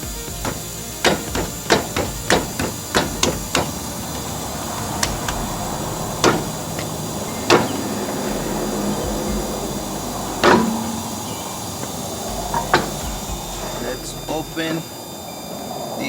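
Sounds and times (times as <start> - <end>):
hammer blows: 0.0 - 15.3.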